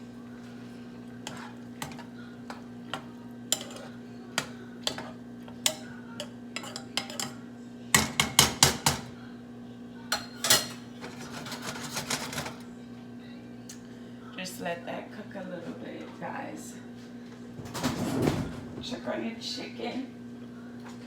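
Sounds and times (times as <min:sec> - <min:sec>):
metal utensil clanking on pot: 0:01.2 - 0:07.4.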